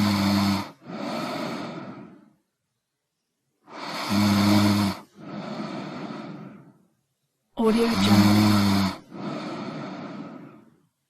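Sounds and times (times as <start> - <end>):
breathy exhale: 0.0 - 2.4, 3.7 - 6.9, 8.0 - 10.9
person snoring: 0.0 - 2.4, 3.7 - 6.7, 7.6 - 10.8.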